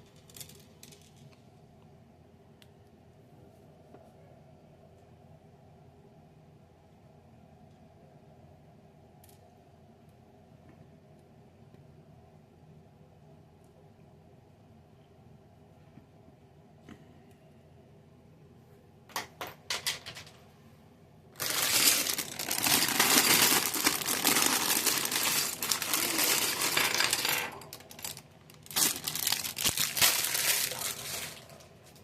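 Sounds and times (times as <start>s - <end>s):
plastic bricks clattering: 21.4s - 31.6s
plastic bag crinkling: 21.4s - 32.0s.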